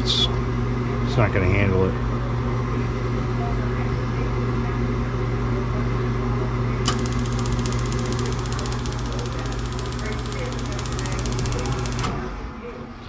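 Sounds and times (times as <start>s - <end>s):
furnace humming: 6.8s - 12.3s
spark ignitor ticking: 6.9s - 12.2s.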